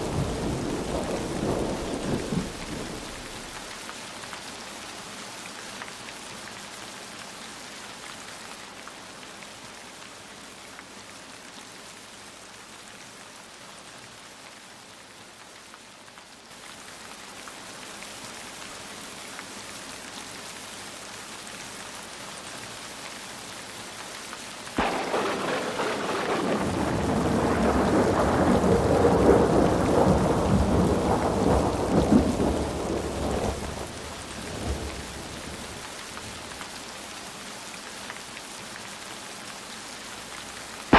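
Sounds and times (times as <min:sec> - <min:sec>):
thunder crack rolling: 0:00.0 - 0:03.7, 0:24.8 - 0:36.6
steady rain falling: 0:00.0 - 0:40.9.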